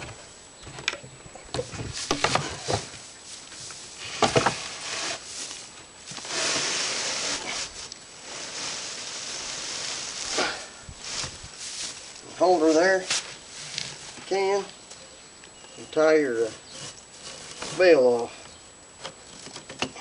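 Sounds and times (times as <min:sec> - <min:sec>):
dry hay rustling: 0:01.6 - 0:14.7.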